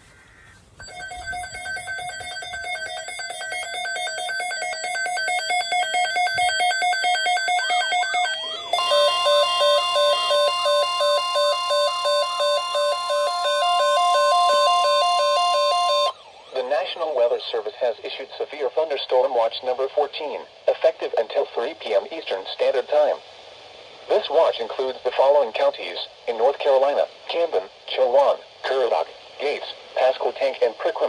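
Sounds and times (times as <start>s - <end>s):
pulsing two-note alert tones: 0.8s - 16.1s
steady alert tone: 0.8s - 16.1s.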